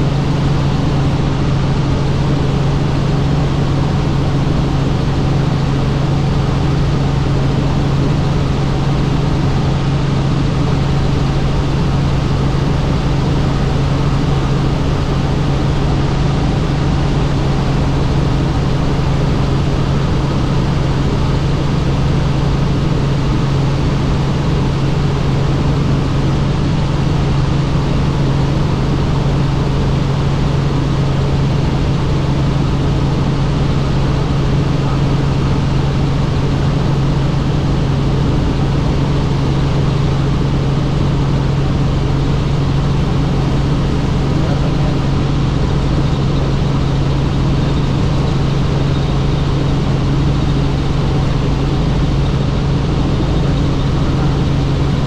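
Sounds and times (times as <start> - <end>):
helicopter engine and rotor drone: 0.0 - 55.0.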